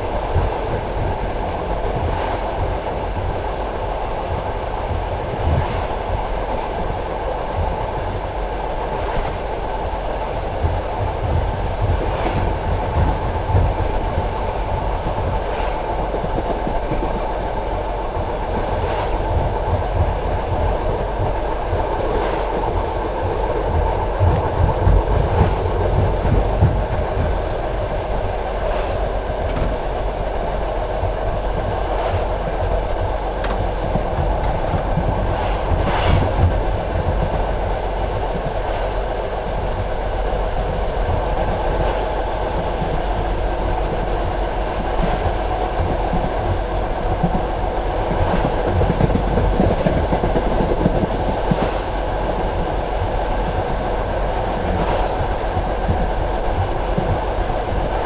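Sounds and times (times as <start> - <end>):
train wheels rumbling on rails: 0.0 - 58.0
wheels clacking over rail joints: 10.6 - 39.1.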